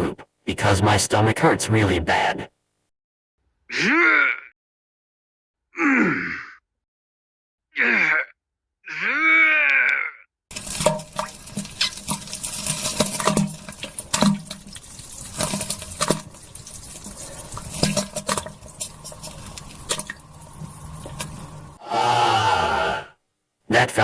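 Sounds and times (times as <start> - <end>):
short falling groan: 21.8 - 23.2.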